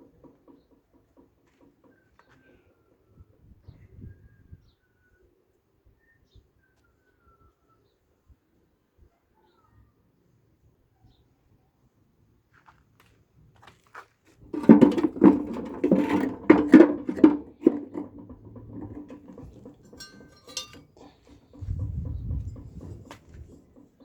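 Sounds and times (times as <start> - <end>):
metallic objects clattering: 14.5 - 24.0
low rumble: 21.6 - 23.5.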